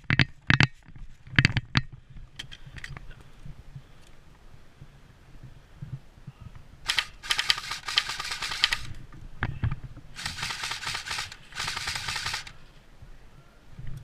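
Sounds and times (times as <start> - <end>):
airsoft gun firing bursts: 6.9 - 9.0, 10.2 - 12.6.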